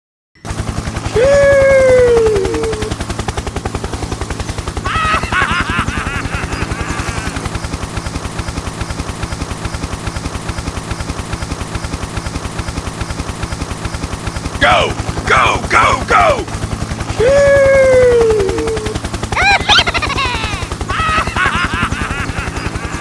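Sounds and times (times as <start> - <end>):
small engine chugging: 0.5 - 23.0
falling pitched tone: 19.4 - 20.9.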